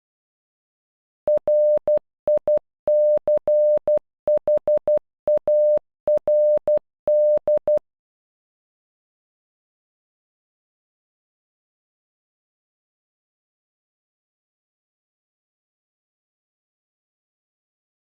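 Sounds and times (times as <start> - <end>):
morse code beep tone: 1.3 - 7.8.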